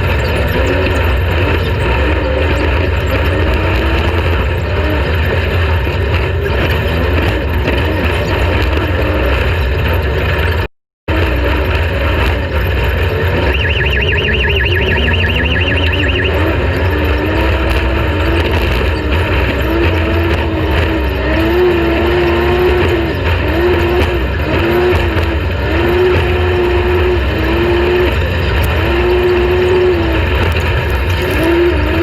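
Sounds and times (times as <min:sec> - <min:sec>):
race vehicle engine: 0:00.0 - 0:32.0
high warbling tone: 0:13.2 - 0:17.7.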